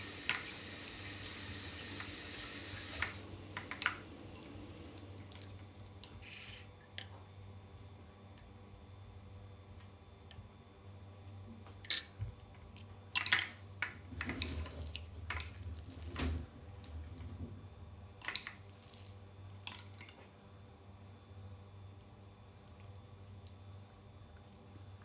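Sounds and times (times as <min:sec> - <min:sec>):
utensils clinking on a dish: 0:11.8 - 0:12.2, 0:12.8 - 0:15.6.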